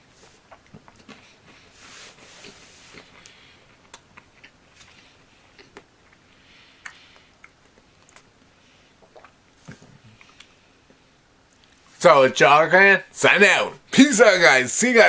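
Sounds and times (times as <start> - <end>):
person chewing crisp wafer: 0.2 - 9.4, 10.1 - 11.9.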